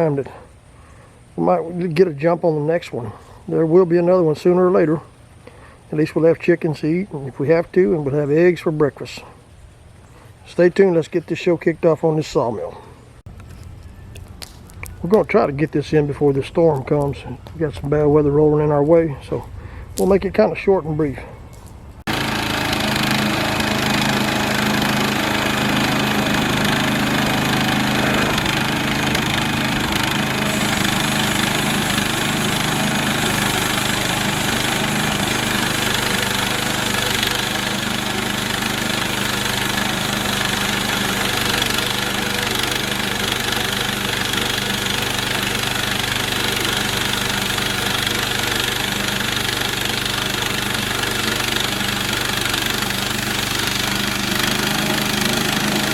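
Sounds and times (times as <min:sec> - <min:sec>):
gasoline engine running: 0:22.1 - 0:55.9.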